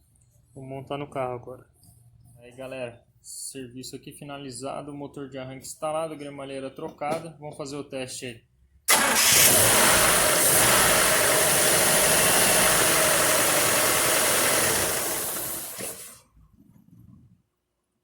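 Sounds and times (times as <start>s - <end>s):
car engine running: 8.9s - 16.2s.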